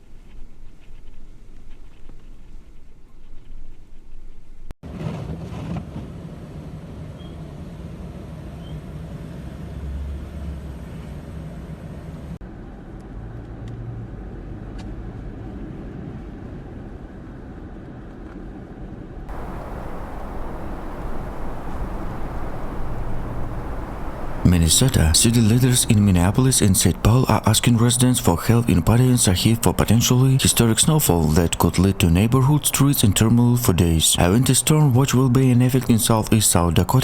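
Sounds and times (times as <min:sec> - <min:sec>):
vehicle and road noise: 0:19.3 - 0:32.3.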